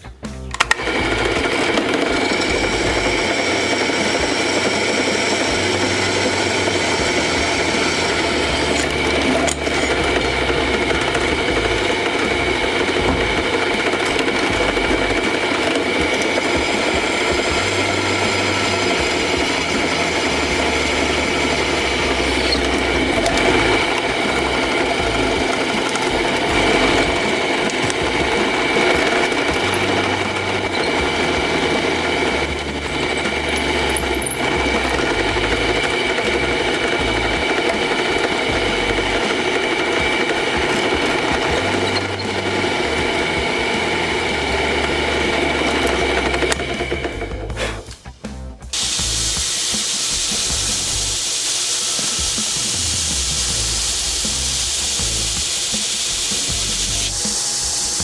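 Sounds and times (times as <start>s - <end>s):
power tool whining: 0.0s - 48.0s, 48.7s - 58.0s.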